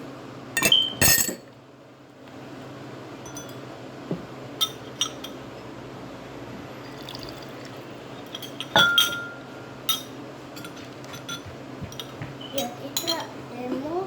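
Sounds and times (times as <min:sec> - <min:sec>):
struck glass ringing: 0:00.6 - 0:01.4
glassware clinking: 0:00.6 - 0:01.5, 0:06.9 - 0:07.5, 0:08.2 - 0:13.2
liquid pouring into glass: 0:06.8 - 0:07.9.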